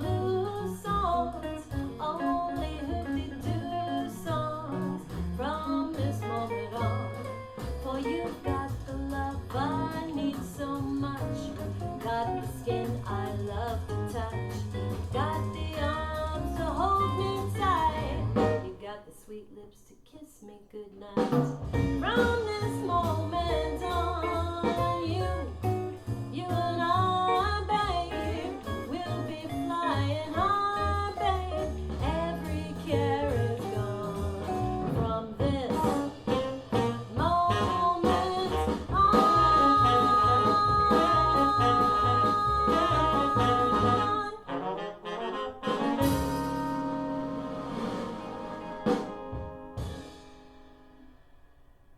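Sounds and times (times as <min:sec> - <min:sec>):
walking bass: 0:00.0 - 0:18.8, 0:21.3 - 0:50.4
drums: 0:00.0 - 0:19.3, 0:21.0 - 0:51.9
horn lead melody: 0:36.1 - 0:51.0.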